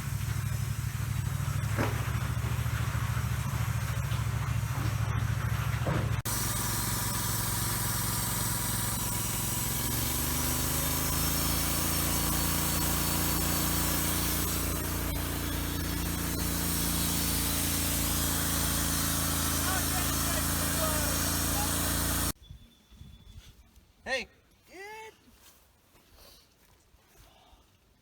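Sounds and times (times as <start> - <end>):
sawmill engine drone: 0.0 - 22.4.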